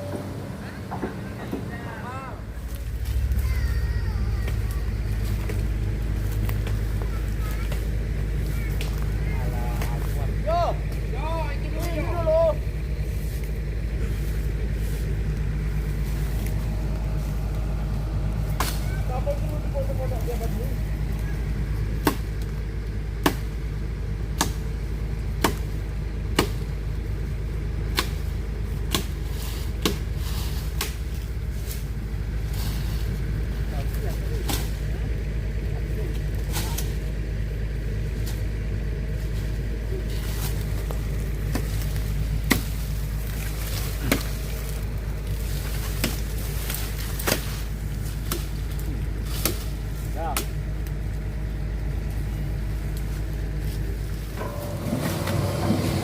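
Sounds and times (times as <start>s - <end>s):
diesel engine droning: 0.0s - 56.0s.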